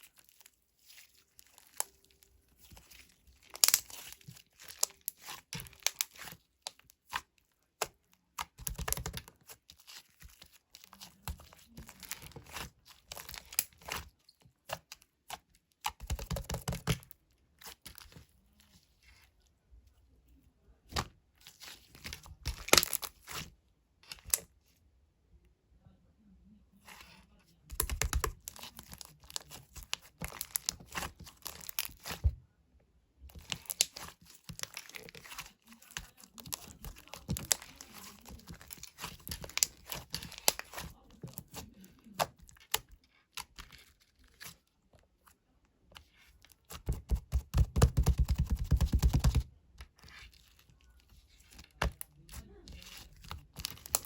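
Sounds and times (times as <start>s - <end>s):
crinkling and tearing: 0.0s - 7.5s, 21.5s - 23.5s, 27.8s - 32.3s, 33.3s - 54.0s.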